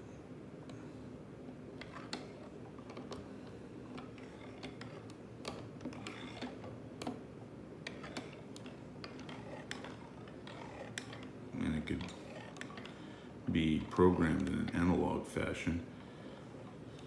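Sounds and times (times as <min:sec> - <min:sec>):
faint electrical hum: 0:00.0 - 0:17.0
joystick mechanism clicking: 0:01.8 - 0:03.3, 0:03.9 - 0:07.2, 0:07.8 - 0:11.4, 0:12.0 - 0:13.0.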